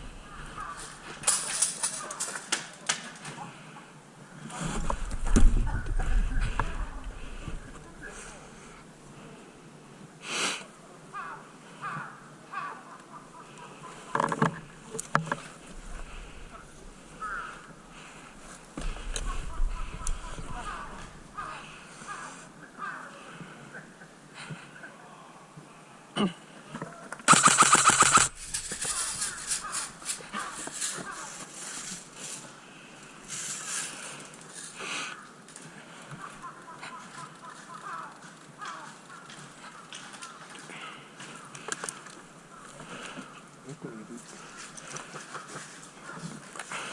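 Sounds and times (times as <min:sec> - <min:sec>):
crow cawing: 0:00.1 - 0:02.3, 0:11.1 - 0:14.7, 0:16.0 - 0:23.4, 0:27.3 - 0:31.6, 0:34.9 - 0:43.5
light clicks and rustling: 0:00.6 - 0:03.4, 0:28.2 - 0:32.5, 0:33.3 - 0:43.4
sharp clicks: 0:27.2 - 0:30.3
noisy burst: 0:27.3 - 0:30.1.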